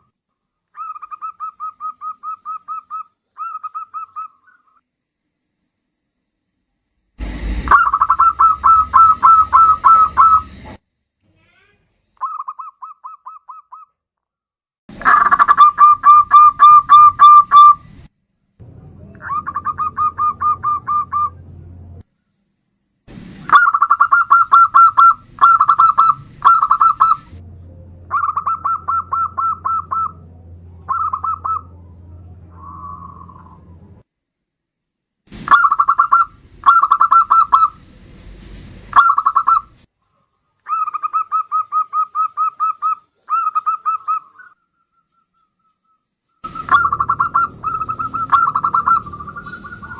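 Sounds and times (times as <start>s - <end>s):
dove cooing: 0.8s - 4.8s, 7.7s - 10.5s, 23.5s - 27.3s, 28.1s - 31.8s, 40.7s - 45.8s, 46.4s - 49.9s.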